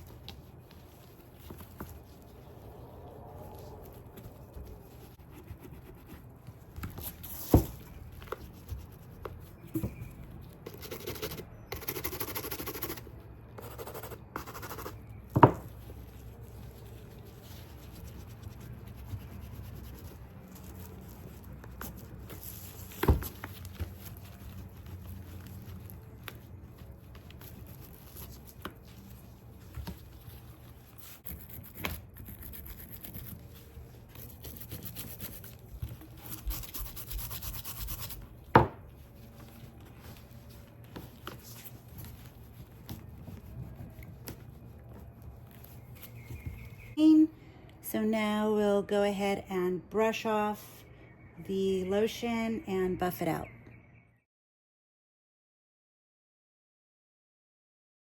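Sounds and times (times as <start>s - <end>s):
brushing on leather handbag: 15.7s - 23.0s, 23.6s - 47.0s.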